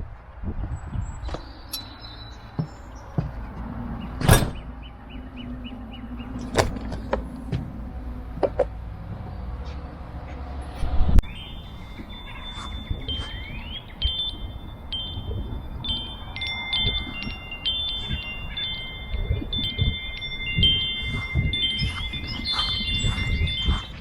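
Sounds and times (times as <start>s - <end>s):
wind chimes ringing: 11.3s - 24.0s.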